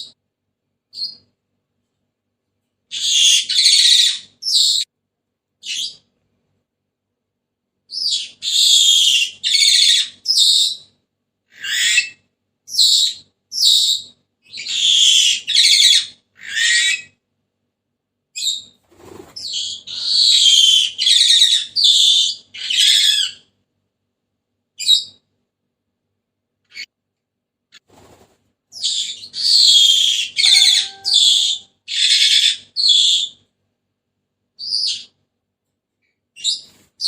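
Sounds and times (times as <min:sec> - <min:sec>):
parrot shrill raspy calls: 0:02.9 - 0:04.9, 0:08.0 - 0:10.8, 0:11.5 - 0:12.2, 0:12.8 - 0:17.2, 0:19.6 - 0:23.4, 0:28.8 - 0:33.4.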